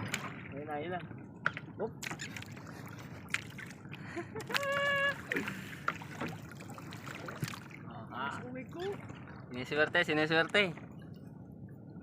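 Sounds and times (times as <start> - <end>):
water splashing: 1.9 - 10.8.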